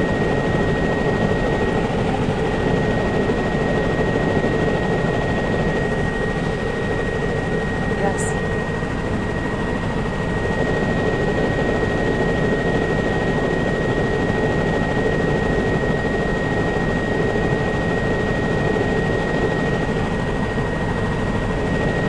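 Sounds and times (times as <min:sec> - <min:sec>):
aircraft engine drone in cabin: 0:00.0 - 0:22.0.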